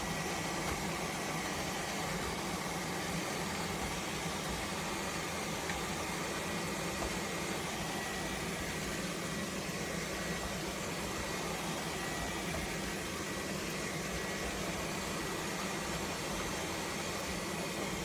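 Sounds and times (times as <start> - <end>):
robot vacuum cleaner whirring: 0.0 - 18.0.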